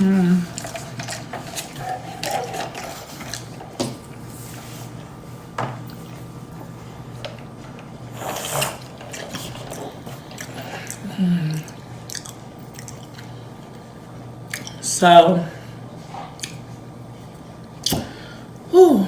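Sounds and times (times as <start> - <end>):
chewing: 0.0 - 3.6, 8.2 - 13.8, 16.2 - 16.6
wet lip smacking: 12.1 - 13.1.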